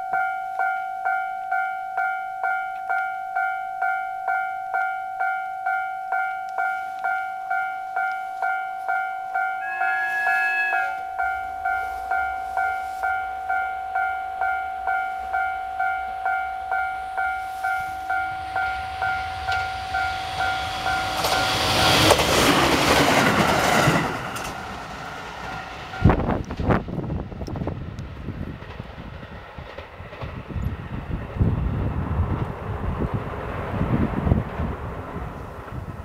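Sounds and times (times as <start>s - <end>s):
level crossing warning bell: 0.0s - 22.1s, 24.3s - 26.3s
electric train passing: 0.0s - 36.0s
train horn: 9.4s - 14.2s.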